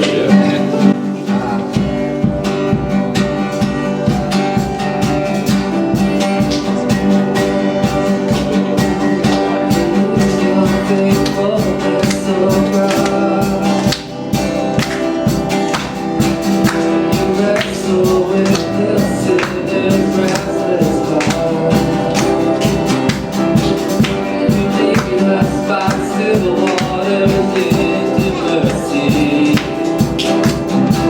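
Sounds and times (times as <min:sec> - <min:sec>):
faint voice: 0:00.0 - 0:11.8
steady drum beat: 0:00.0 - 0:31.0
strummed guitar: 0:00.0 - 0:31.0.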